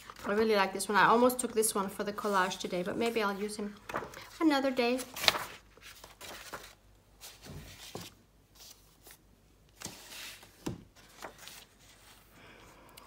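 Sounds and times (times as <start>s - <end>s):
book pages rustling: 3.7s - 12.3s.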